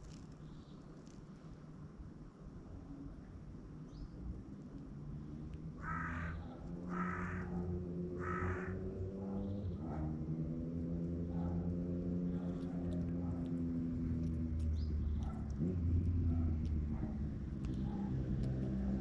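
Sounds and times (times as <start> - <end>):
crow cawing: 5.8 - 7.6, 8.2 - 8.9.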